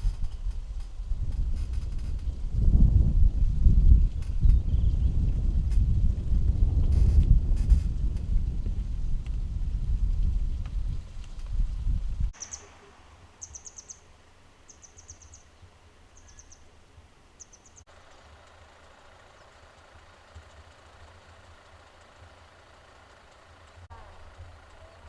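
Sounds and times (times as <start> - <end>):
wind buffeting microphone: 0.0 - 12.4
small bird trilling: 13.4 - 14.0, 14.7 - 15.4.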